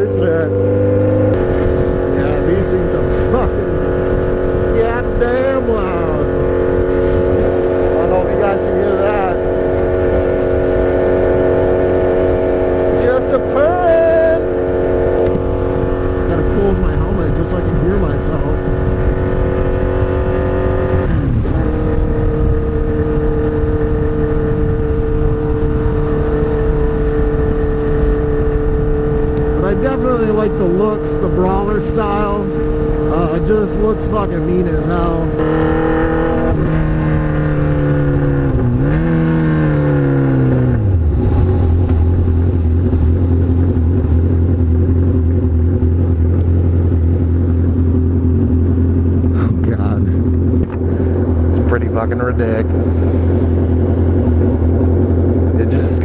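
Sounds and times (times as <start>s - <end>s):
low wind rumble: 0.0s - 56.0s
motorcycle engine cruising: 0.0s - 56.0s.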